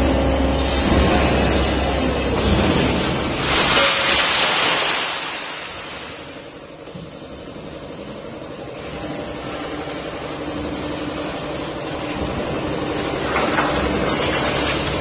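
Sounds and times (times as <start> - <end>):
hydraulic baler mechanical hum: 0.0 - 4.4, 5.0 - 15.0.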